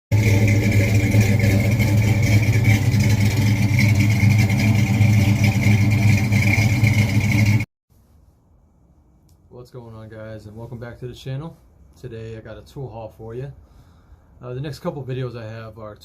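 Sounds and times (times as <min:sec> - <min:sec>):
car engine running: 0:00.1 - 0:07.7.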